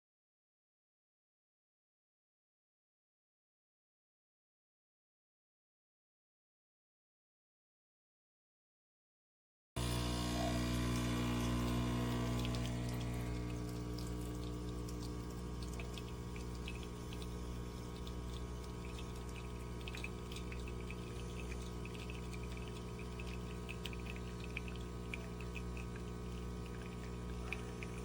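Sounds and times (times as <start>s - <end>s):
coffee dripping and spattering: 9.8s - 28.0s
espresso machine pump humming: 9.8s - 28.0s.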